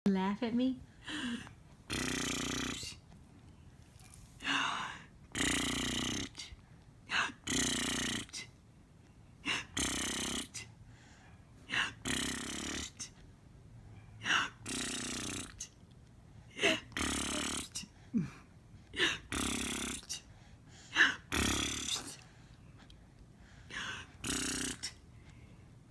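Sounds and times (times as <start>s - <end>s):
person making snore-like buzzing: 1.9s - 3.0s, 5.3s - 8.5s, 9.4s - 10.7s, 11.7s - 13.1s, 14.3s - 15.7s, 16.6s - 18.3s, 19.0s - 20.2s, 21.0s - 22.2s, 23.8s - 25.0s.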